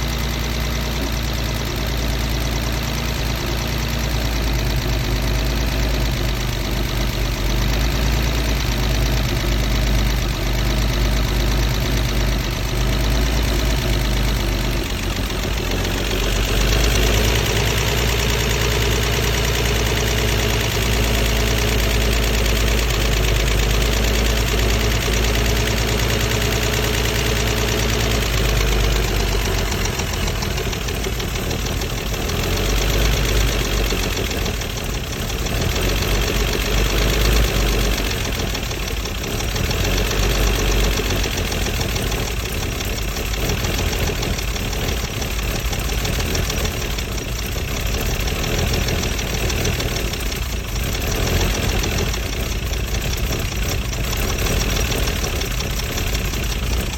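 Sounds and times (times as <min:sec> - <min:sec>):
car engine idling roughly: 0:00.0 - 0:56.9.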